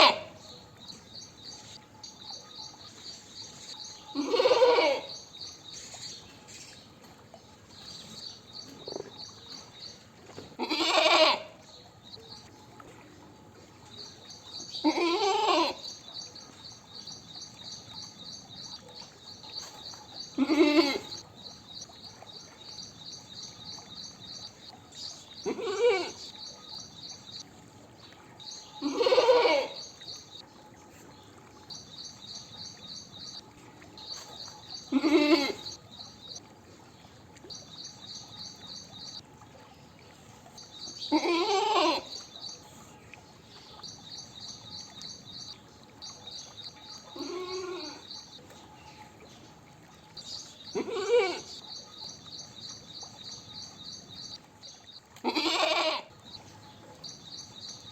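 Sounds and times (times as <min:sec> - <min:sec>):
goat bleating: 0:00.0 - 0:00.3, 0:04.2 - 0:05.1, 0:10.6 - 0:11.5, 0:14.8 - 0:15.8, 0:20.4 - 0:21.1, 0:25.4 - 0:26.2, 0:28.8 - 0:29.8, 0:34.9 - 0:35.7, 0:41.1 - 0:42.1, 0:47.2 - 0:48.0, 0:50.8 - 0:51.5, 0:55.2 - 0:56.1.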